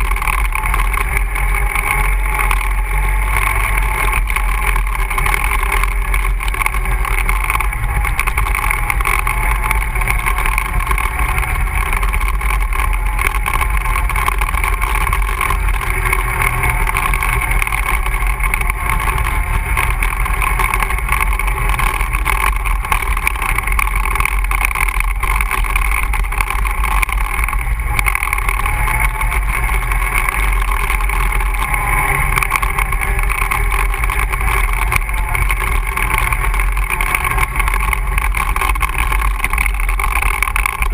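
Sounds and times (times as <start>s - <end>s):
atv engine running: 0.0s - 40.9s.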